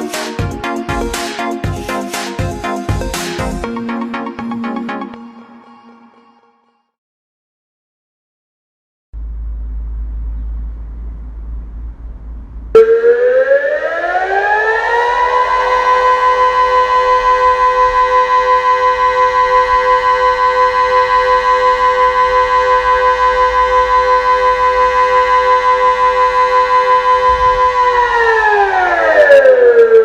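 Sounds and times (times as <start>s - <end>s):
civil-defence siren wavering chord: 0.0s - 6.2s, 12.7s - 30.0s.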